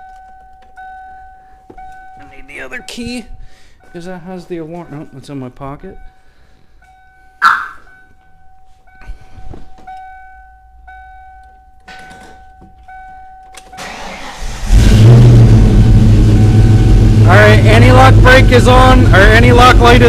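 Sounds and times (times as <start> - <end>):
two-tone warning chime: 0.0 - 14.0
car starter cranking: 13.5 - 16.1
car engine running loudly: 14.4 - 20.0.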